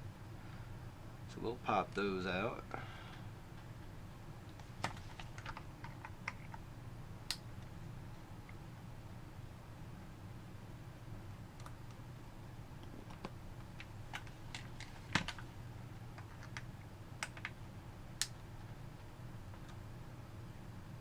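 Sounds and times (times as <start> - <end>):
faint low hum: 0.0 - 21.0.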